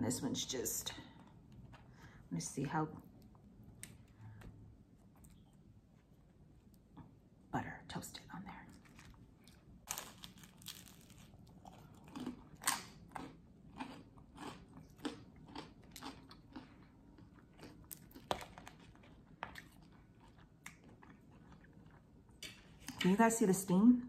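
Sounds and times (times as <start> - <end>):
biting crunchy toast: 8.7 - 22.0.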